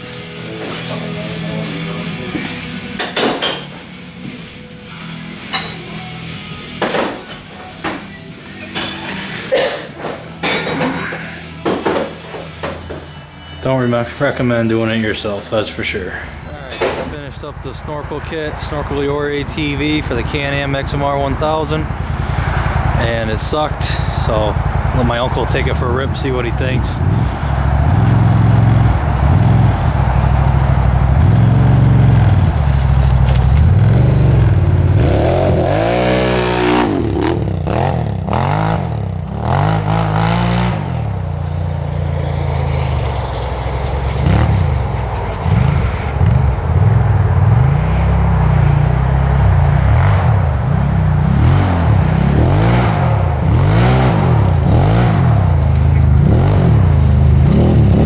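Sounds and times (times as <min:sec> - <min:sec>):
atv engine revving: 0:17.2 - 0:58.0.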